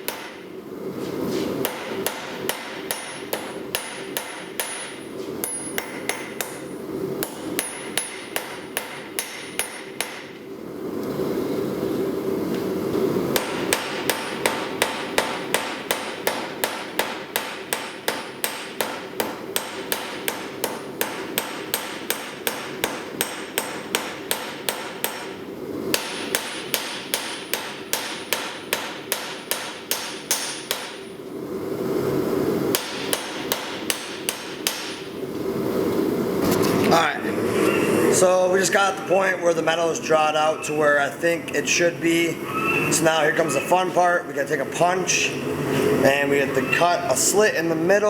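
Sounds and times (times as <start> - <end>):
hammer striking steel on anvil: 0.0 - 0.4, 1.6 - 10.4, 13.3 - 31.1, 32.7 - 35.1.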